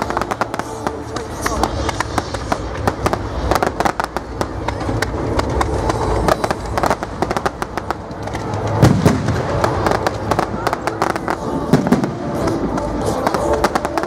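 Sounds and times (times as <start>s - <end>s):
fireworks crackling: 0.0s - 14.0s
low rumble of bursts: 0.0s - 14.0s
heavy firework bang: 8.5s - 12.2s.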